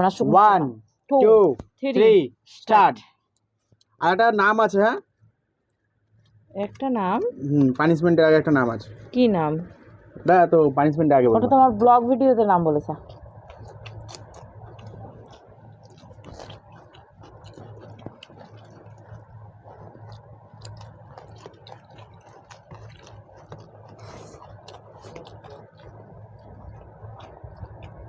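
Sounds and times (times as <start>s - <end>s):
steady low hum: 6.0s - 28.0s
chewing and mouth sounds: 13.0s - 28.0s.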